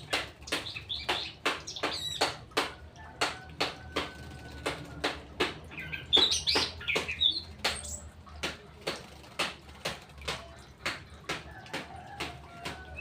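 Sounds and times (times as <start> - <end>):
bird chirping: 5.7 - 8.2.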